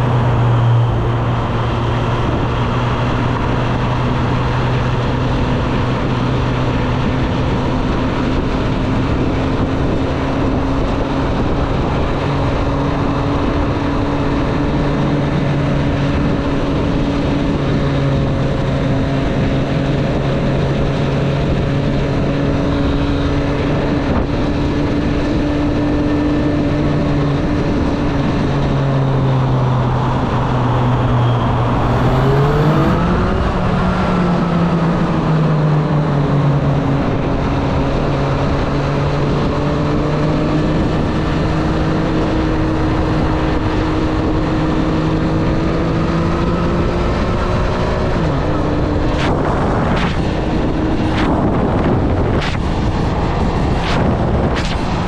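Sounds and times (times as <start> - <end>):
wind and road noise: 0.0 - 55.0
motorcycle engine revving: 30.9 - 34.4.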